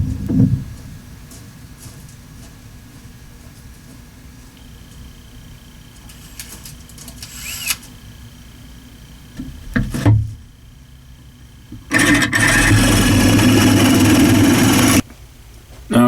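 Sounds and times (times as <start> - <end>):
handling knocks and clunks: 0.0 - 1.0
power drill drilling wood: 6.0 - 8.6, 11.9 - 15.0.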